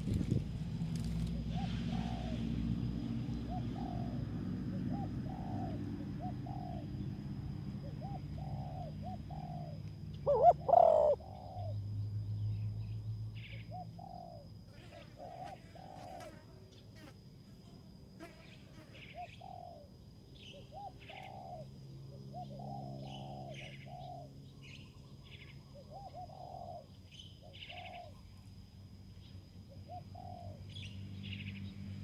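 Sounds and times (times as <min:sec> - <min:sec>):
doves cooing: 0:07.9 - 0:11.7.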